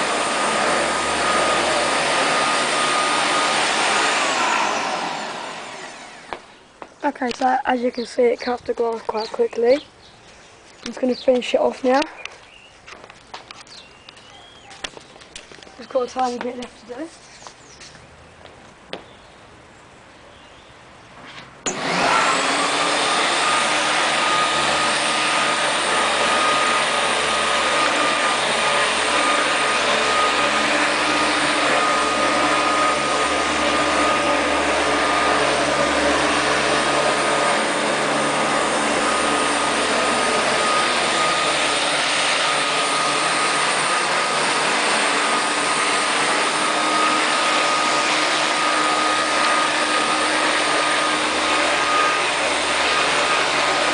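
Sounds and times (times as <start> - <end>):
electric hover mower running: 0.0 - 10.1, 21.6 - 53.9.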